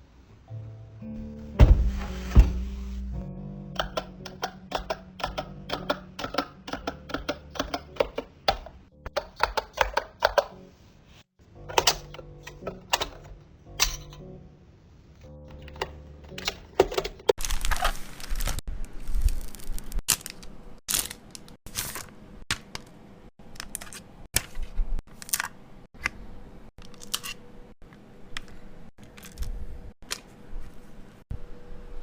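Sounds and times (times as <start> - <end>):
paper and plastic tearing: 17.2 - 22.1.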